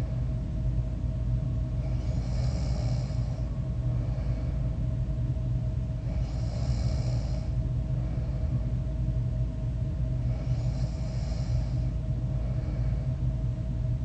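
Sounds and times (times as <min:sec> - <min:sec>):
person snoring: 0:01.8 - 0:03.4, 0:06.0 - 0:07.6, 0:10.3 - 0:11.9.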